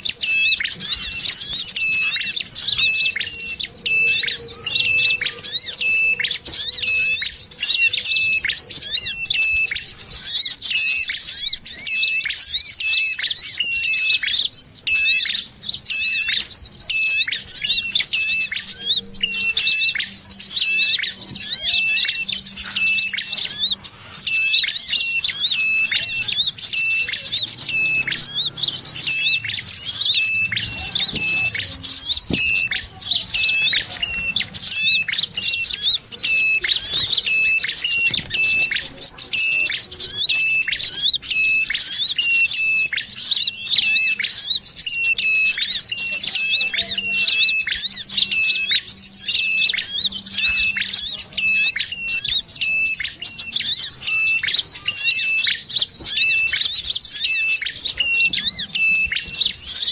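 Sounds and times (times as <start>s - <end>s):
high chattering bird chirps: 0.0s - 59.9s.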